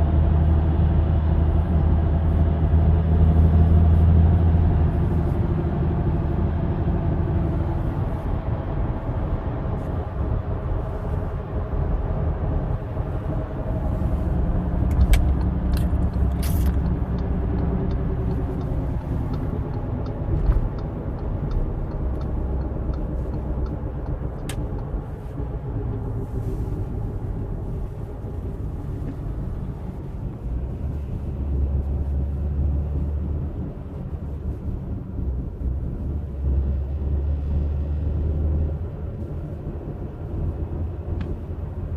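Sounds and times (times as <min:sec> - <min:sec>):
car driving with low rumble: 0:00.0 - 0:41.9.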